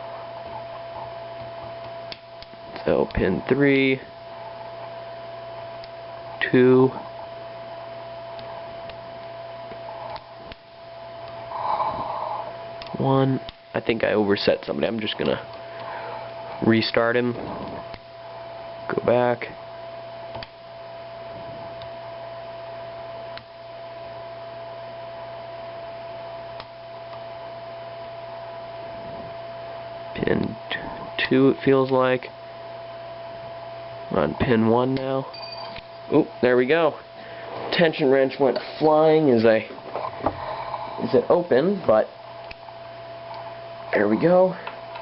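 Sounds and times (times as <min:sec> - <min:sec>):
steady electrical hum: 0:00.0 - 0:45.0
constant high tone: 0:34.1 - 0:42.7.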